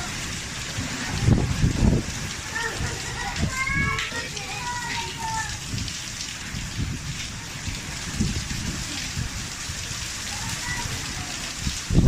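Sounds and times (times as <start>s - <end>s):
heavy rain hissing: 0.0s - 12.0s.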